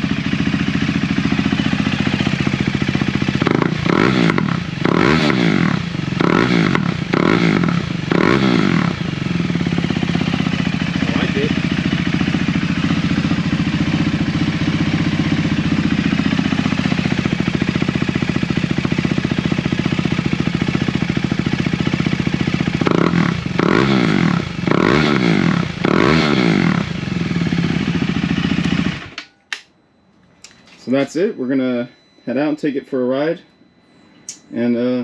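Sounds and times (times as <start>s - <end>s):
motorcycle engine idling and revving: 0.0s - 29.3s.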